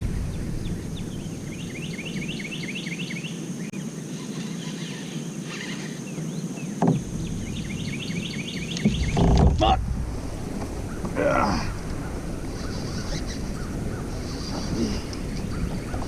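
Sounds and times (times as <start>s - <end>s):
low steady rumble: 0.0s - 2.5s, 7.0s - 16.0s
songbird chirping: 0.0s - 16.0s.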